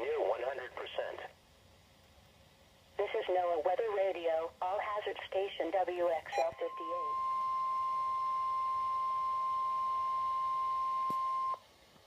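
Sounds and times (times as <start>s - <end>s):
steady pure alarm tone: 6.3s - 11.6s.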